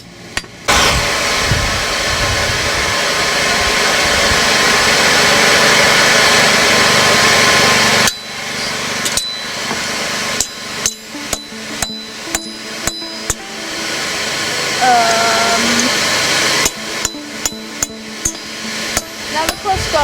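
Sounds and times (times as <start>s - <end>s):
hammer striking metal on anvil: 0.0s - 0.8s, 9.0s - 9.8s, 10.4s - 13.8s, 16.6s - 19.8s
loud rushing noise: 0.7s - 9.0s, 9.6s - 20.0s.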